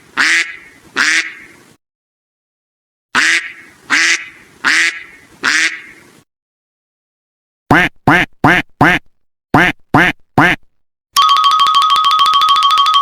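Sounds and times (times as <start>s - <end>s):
duck quacking: 0.2s - 1.5s, 3.2s - 6.0s, 7.7s - 10.7s.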